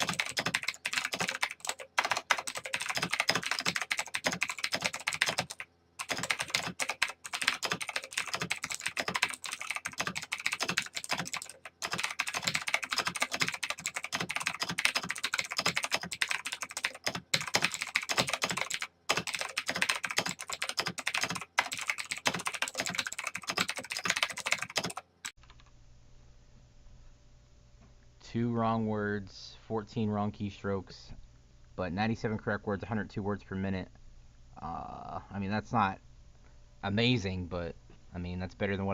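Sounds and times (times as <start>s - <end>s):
typing on mechanical keyboard: 0.0s - 25.7s.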